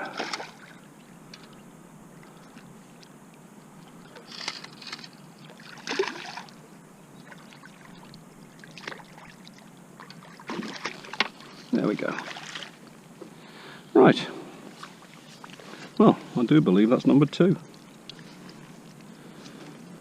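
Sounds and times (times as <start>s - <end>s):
fish splashing in water: 0.0s - 0.8s, 5.4s - 6.6s, 7.2s - 12.8s
faint background hiss: 0.0s - 20.0s.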